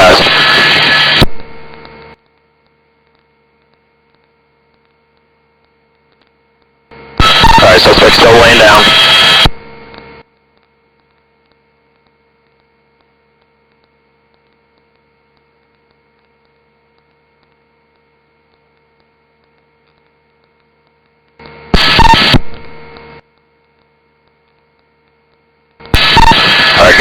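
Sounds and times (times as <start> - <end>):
burst of radio noise: 0.0 - 1.8, 7.2 - 9.8, 21.7 - 23.0, 25.9 - 27.0
faint electrical hum: 0.0 - 27.0.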